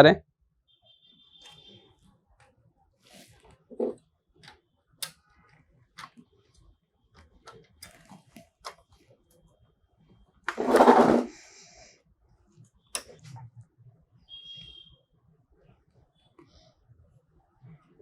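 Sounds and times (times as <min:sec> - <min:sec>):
rattling scrape: 0:10.5 - 0:11.4.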